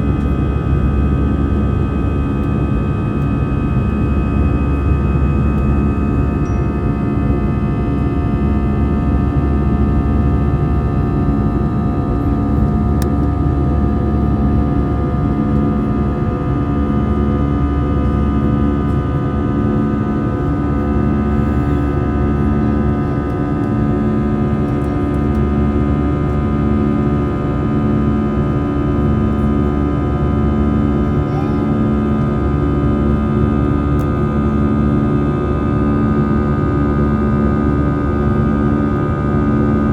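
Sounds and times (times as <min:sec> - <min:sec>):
jet engine cabin noise: 0:00.0 - 0:39.9.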